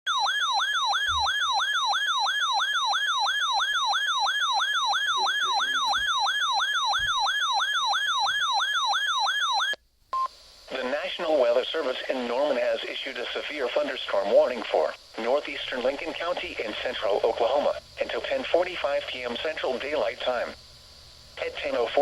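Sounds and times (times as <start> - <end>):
electronic siren alarm wailing: 0.1 - 9.8.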